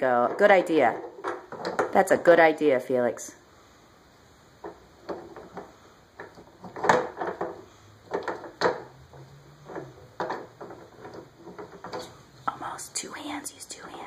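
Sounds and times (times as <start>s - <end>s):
toy tools knocking and clattering: 4.6s - 12.1s.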